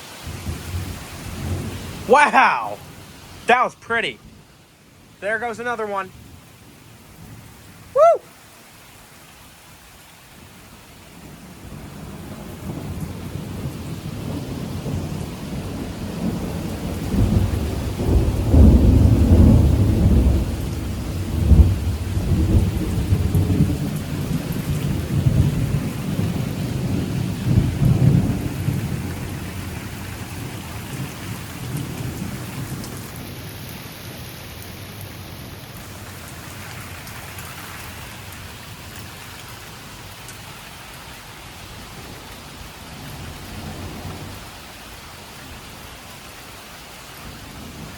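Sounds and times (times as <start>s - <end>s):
heavy rain: 0.0s - 47.9s
rolling thunder: 0.2s - 2.1s, 11.2s - 33.6s, 43.0s - 44.4s.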